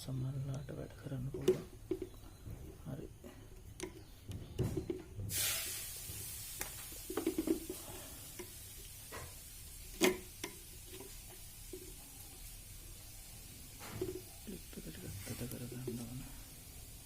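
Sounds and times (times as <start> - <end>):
steady hiss: 0.0 - 17.0
clicks and knocks of hand work: 1.2 - 5.3.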